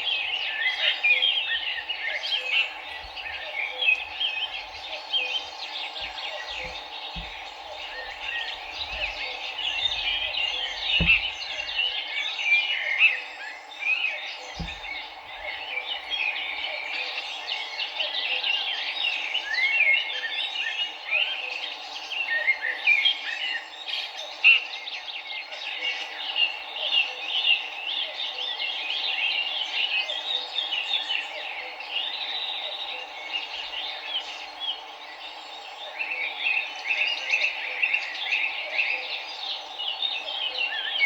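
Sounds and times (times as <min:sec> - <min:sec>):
birds chirping and trilling: 0:00.0 - 0:41.0
flowing river: 0:01.3 - 0:12.2, 0:14.4 - 0:16.9
low thumps: 0:02.6 - 0:12.0, 0:14.5 - 0:16.8.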